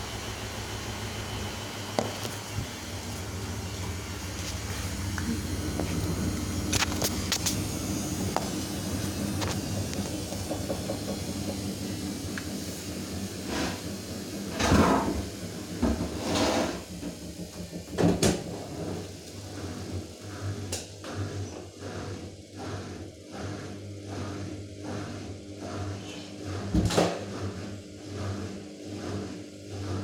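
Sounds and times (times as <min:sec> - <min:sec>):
washing machine motor hum: 0:00.0 - 0:30.0
washing machine drum swishing: 0:00.1 - 0:23.6.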